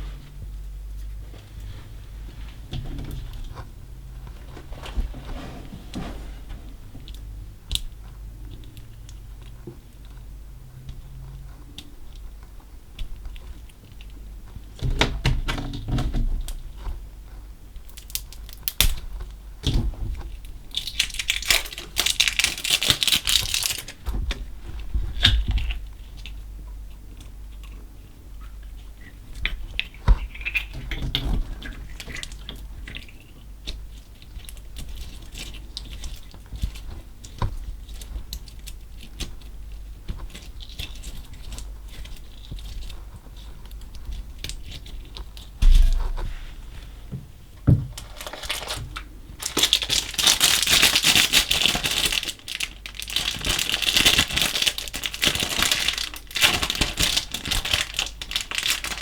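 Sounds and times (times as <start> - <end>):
slime crackling: 20.3 - 24.0, 48.0 - 59.0.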